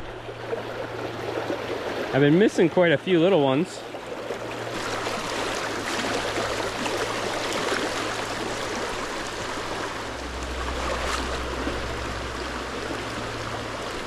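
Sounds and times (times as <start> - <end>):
stream water rushing over rocks: 0.0 - 14.0.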